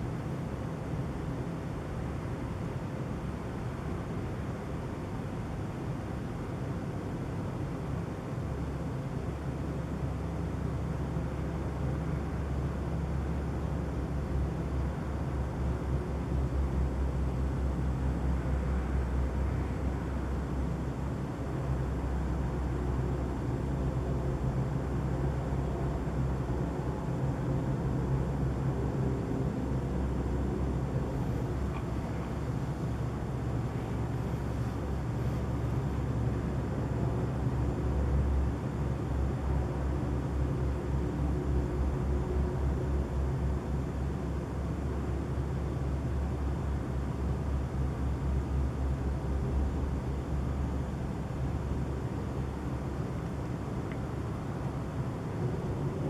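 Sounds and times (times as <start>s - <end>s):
low droning hum: 13.4s - 56.0s.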